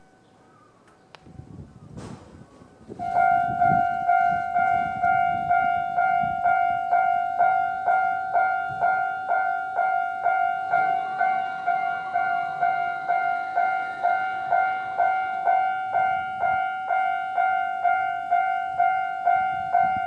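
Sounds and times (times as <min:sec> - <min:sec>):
click: 0:00.8 - 0:01.3
level crossing warning bell: 0:02.7 - 0:20.0.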